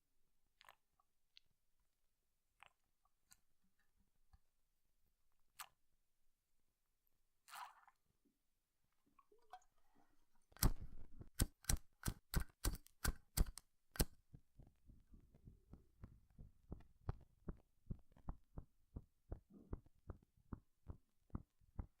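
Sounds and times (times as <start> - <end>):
lighter clicking: 11.4 - 14.2.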